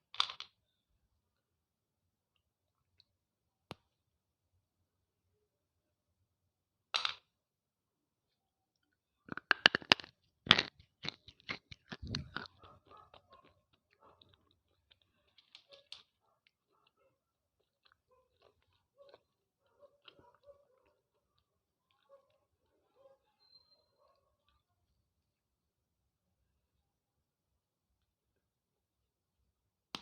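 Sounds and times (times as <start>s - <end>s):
crunchy chewing: 9.3s - 22.6s.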